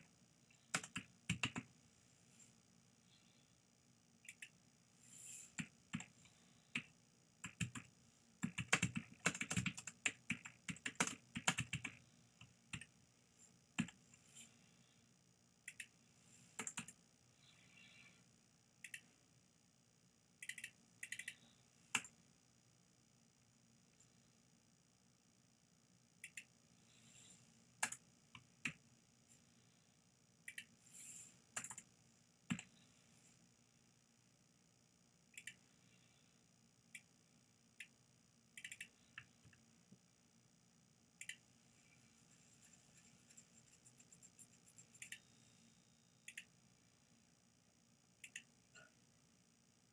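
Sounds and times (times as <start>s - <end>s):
computer keyboard typing: 0.7s - 1.7s, 5.6s - 6.1s, 6.7s - 12.0s, 16.6s - 17.0s, 31.6s - 31.9s.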